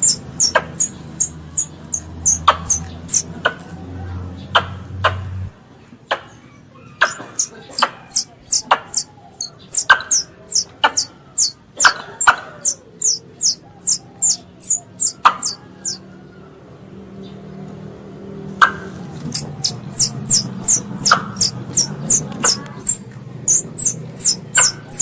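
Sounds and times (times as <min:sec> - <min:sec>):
high falling chirps: 0:00.0 - 0:03.4, 0:06.9 - 0:16.0, 0:19.3 - 0:25.0.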